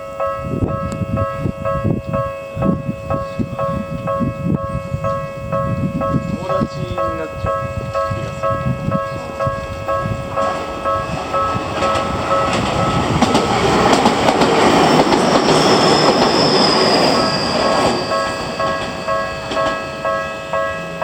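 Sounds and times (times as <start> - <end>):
train rumble: 0.0 - 21.0
high wheel squeal: 9.1 - 21.0.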